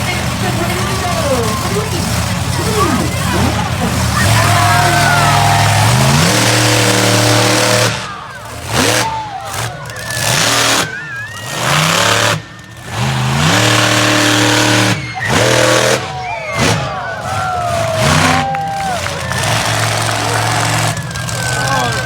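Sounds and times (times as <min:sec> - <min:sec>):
truck engine revving: 0:00.0 - 0:22.0.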